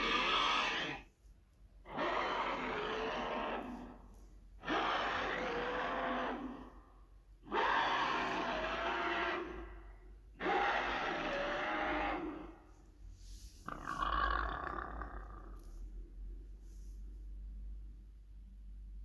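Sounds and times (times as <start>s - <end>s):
monster growls: 0.0s - 1.0s, 1.9s - 4.0s, 4.6s - 6.8s, 7.5s - 12.6s, 13.6s - 15.8s.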